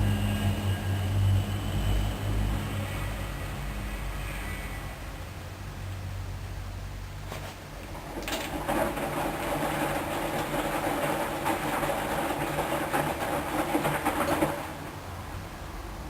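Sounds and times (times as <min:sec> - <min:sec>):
washing machine hum: 0:00.0 - 0:16.0
washing machine rattling: 0:07.2 - 0:15.5.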